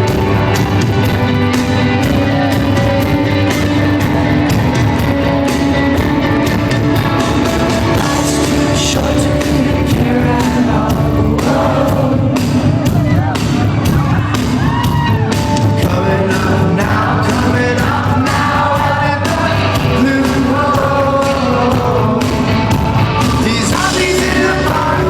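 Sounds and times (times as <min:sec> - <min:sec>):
crowd voices: 0:00.0 - 0:25.0
live rock band playing: 0:00.0 - 0:25.0
person singing: 0:07.0 - 0:25.0.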